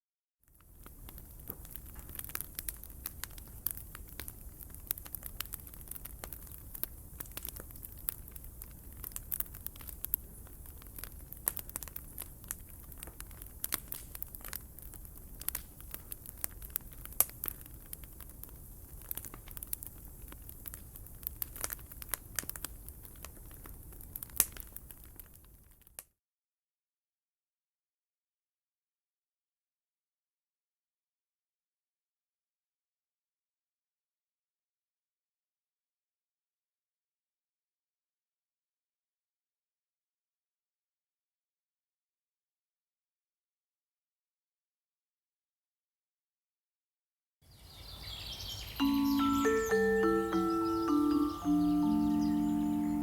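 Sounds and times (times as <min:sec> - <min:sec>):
campfire crackling: 0:00.6 - 0:26.0, 0:48.8 - 0:53.0.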